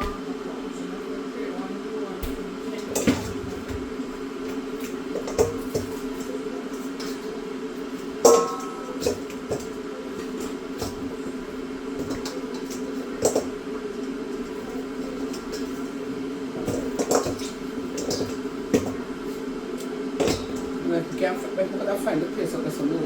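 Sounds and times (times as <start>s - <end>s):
steady low hum: 0.0s - 23.0s
metal pot clanking: 4.5s - 19.4s, 20.2s - 20.8s.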